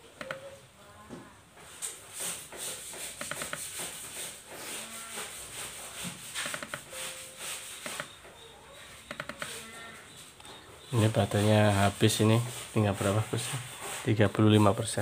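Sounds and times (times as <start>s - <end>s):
laptop keyboard and touchpad clicks: 3.2s - 3.6s, 6.4s - 6.8s, 9.0s - 9.6s.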